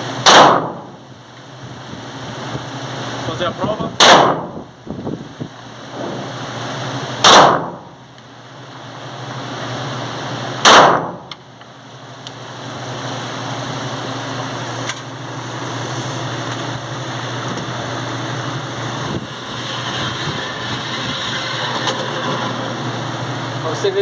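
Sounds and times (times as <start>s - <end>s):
steady low hum: 0.0s - 24.0s
pistol shots: 0.2s - 0.8s, 4.0s - 4.5s, 7.2s - 7.8s, 10.6s - 11.2s.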